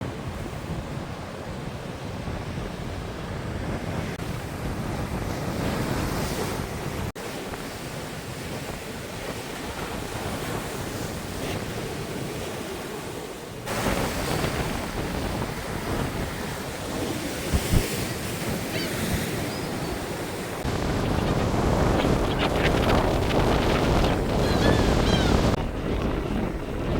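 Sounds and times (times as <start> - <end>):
surf breaking on shore: 0.0 - 26.9
wind buffeting microphone: 0.0 - 26.9.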